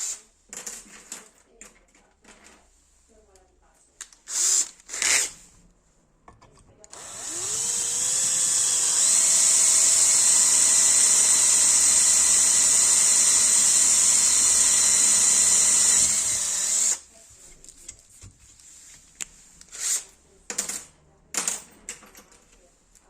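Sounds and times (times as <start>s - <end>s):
electric power drill running: 6.9s - 17.0s.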